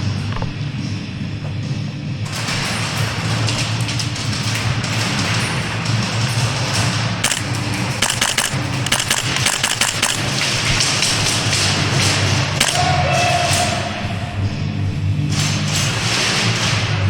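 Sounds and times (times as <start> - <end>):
airsoft gunshots: 7.2 - 14.1.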